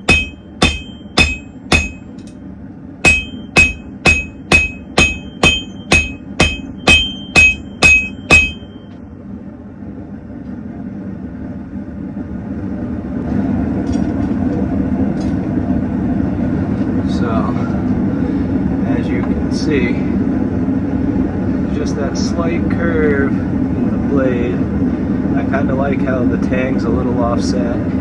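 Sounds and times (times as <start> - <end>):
hammer striking steel on anvil: 0.0 - 2.3, 3.1 - 8.8.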